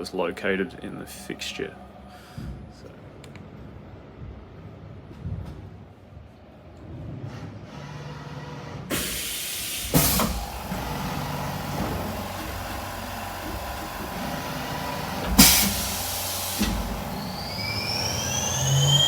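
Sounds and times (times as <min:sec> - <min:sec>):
air blasts: 0:08.9 - 0:19.0
milling machine hissing: 0:08.9 - 0:19.0.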